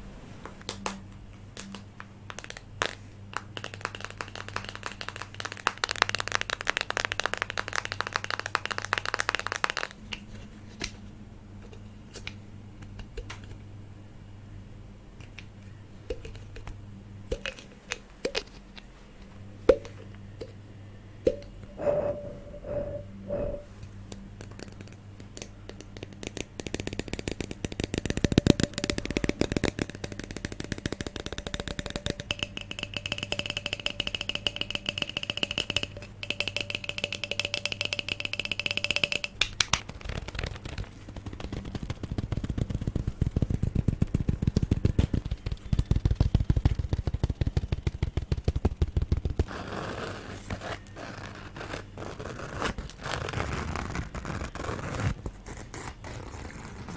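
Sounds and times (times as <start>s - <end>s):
faint steady hum: 0.0s - 56.9s
tapping and scratching on objects: 0.6s - 11.0s, 16.1s - 20.6s, 24.4s - 56.9s.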